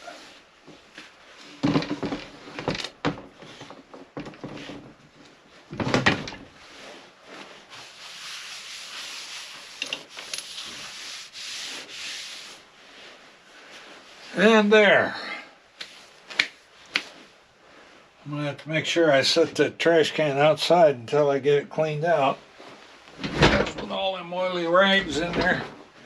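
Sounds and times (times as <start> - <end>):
knocks and clunks: 1.6 - 6.6, 23.2 - 24.1, 25.0 - 25.9
paper towels rubbing metal bench: 6.6 - 13.2.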